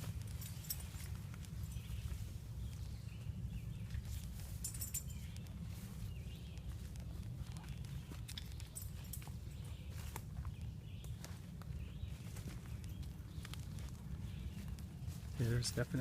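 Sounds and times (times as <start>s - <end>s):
footsteps through undergrowth: 0.0s - 16.0s
steady low rumble: 0.0s - 16.0s
twigs and leaves snapping: 3.8s - 15.4s.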